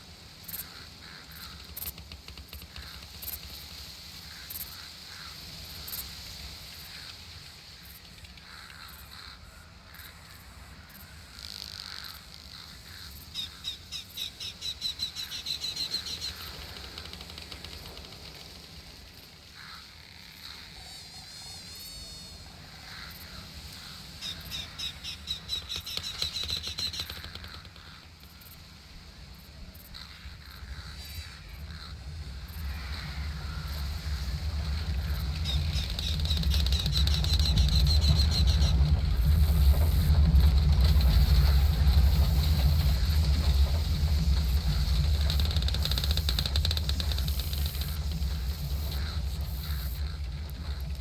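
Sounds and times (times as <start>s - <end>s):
insects humming: 0.0s - 51.0s
rapid rising chirps: 32.1s - 51.0s.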